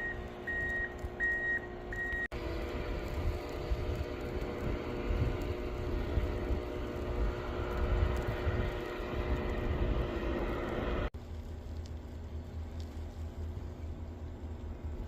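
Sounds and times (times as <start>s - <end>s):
vehicle engine running: 0.0s - 11.3s
wind or road noise hiss: 2.4s - 15.0s.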